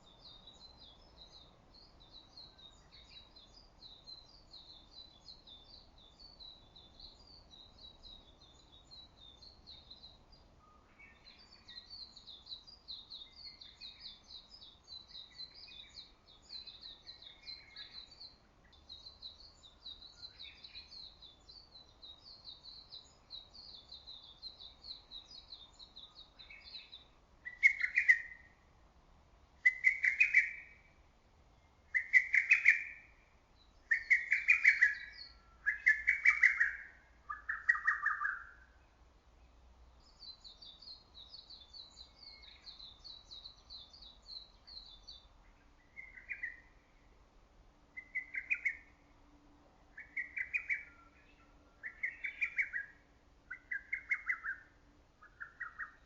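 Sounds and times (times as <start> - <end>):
small bird twittering: 0.0 - 28.6, 29.6 - 30.9, 31.9 - 33.2, 33.8 - 38.8, 40.0 - 46.9, 48.0 - 49.0, 49.9 - 56.0
faint lower bird calls: 0.0 - 28.7, 29.6 - 39.0, 40.0 - 47.2, 47.9 - 49.2, 49.9 - 56.0
cuckoo calling: 33.9 - 38.6.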